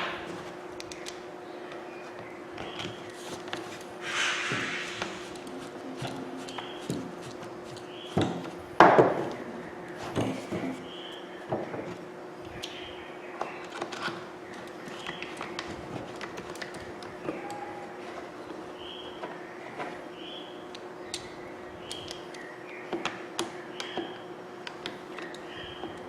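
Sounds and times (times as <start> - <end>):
steady low hum: 0.0 - 26.0
plastic parts clicking and knocking: 13.4 - 17.6, 21.9 - 26.0.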